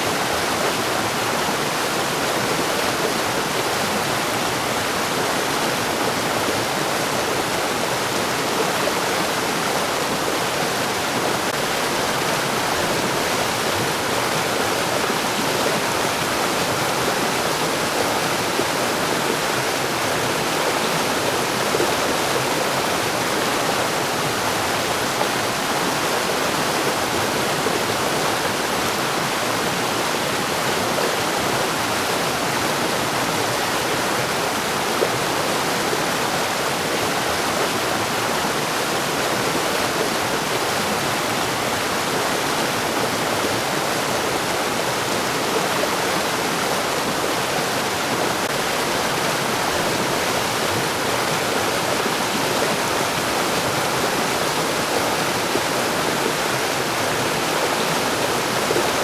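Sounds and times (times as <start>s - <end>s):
stream rushing over rocks: 0.0s - 59.0s.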